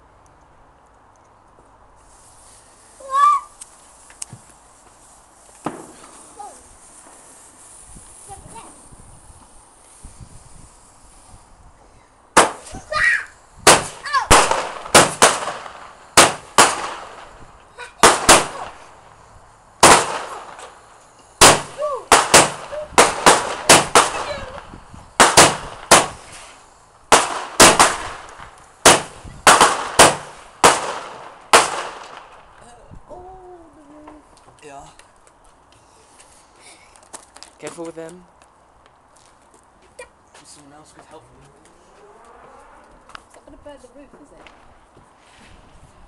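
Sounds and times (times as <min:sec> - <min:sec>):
fireworks bangs: 0:05.6 - 0:08.8, 0:12.4 - 0:19.1, 0:19.8 - 0:32.6.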